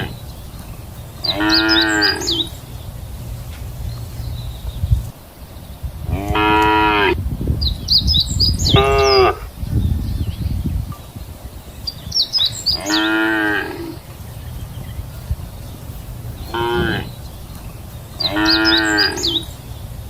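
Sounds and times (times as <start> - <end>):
faint bird chirps: 0.0 - 5.9, 7.6 - 20.0
steady low rumble: 0.0 - 13.0, 13.7 - 20.0
cows mooing: 1.2 - 2.5, 6.1 - 7.2, 12.7 - 14.0, 16.5 - 17.2, 18.2 - 19.5.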